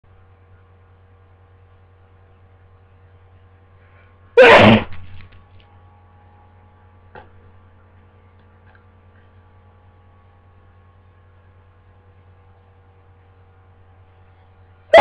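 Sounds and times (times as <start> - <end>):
low electrical hum: 0.1 - 15.0
person sneezing: 4.4 - 5.0.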